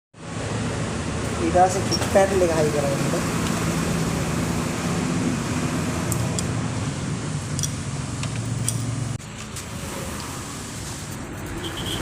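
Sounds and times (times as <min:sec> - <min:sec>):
tools clicking on metal: 0:07.5 - 0:08.9.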